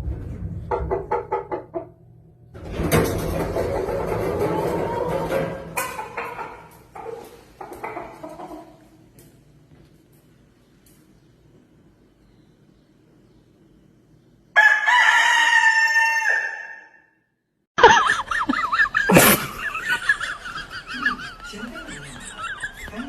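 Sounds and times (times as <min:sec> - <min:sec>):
wavering overlapping animal calls: 0:19.6 - 0:23.0.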